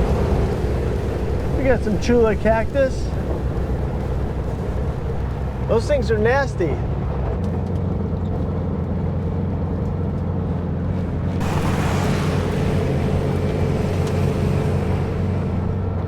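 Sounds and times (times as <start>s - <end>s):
road and wind noise hissing: 0.0s - 7.4s, 11.0s - 16.0s
engine droning while driving: 0.0s - 16.0s.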